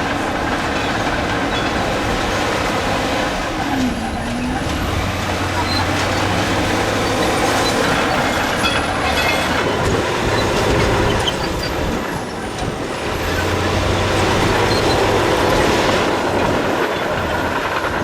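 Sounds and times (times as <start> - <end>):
heavy diesel machinery running: 0.0 - 18.0.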